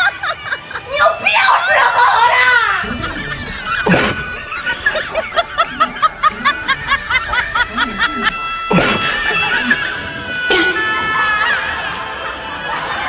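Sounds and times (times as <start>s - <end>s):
background music: 0.0s - 13.0s
chirpy repeated notes: 2.8s - 11.4s.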